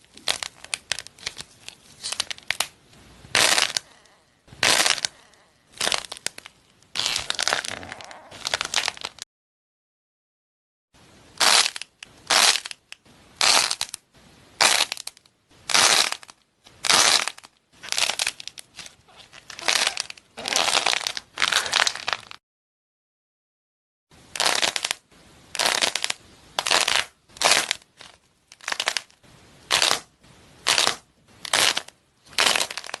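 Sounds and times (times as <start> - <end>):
crunchy slime crackling: 0.0 - 2.7, 3.3 - 9.2, 14.6 - 22.4, 25.6 - 33.0.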